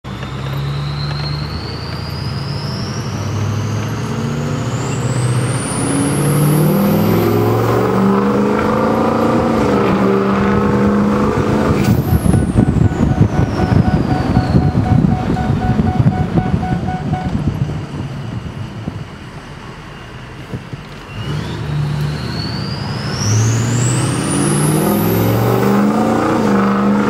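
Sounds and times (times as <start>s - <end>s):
diesel engine under throttle: 0.1s - 27.0s
turbocharger whistle: 0.6s - 7.6s, 10.8s - 17.4s.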